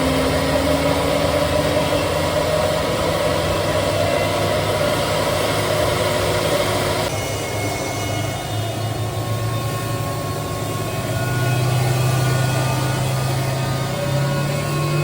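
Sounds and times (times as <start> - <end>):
turbine noise with hiss: 0.0 - 15.0.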